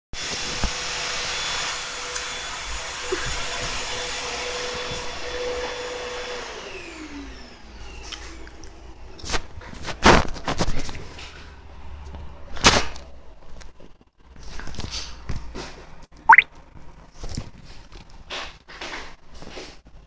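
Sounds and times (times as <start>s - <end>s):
vacuum cleaner running: 0.2s - 8.0s.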